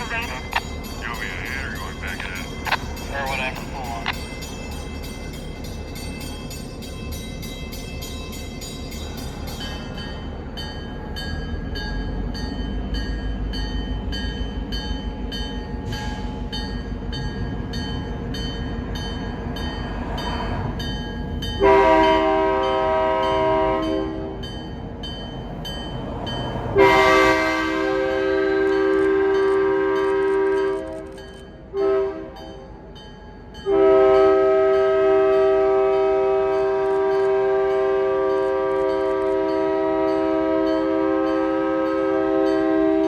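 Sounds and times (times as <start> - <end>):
locomotive engine rumble: 0.0 - 6.4
locomotive bell ringing: 0.0 - 19.9
locomotive air horn blast: 21.6 - 24.4, 26.8 - 31.1, 31.7 - 32.6, 33.7 - 43.0.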